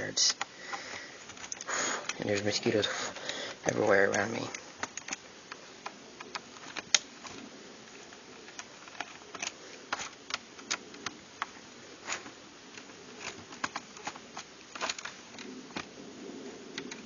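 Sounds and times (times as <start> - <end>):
screwdriver clicking on plastic case: 4.0 - 5.2, 13.2 - 15.9.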